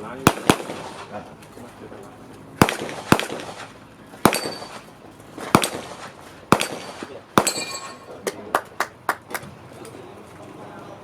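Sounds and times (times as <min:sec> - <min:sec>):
handgun shots echoing: 0:00.3 - 0:01.1, 0:02.6 - 0:08.1.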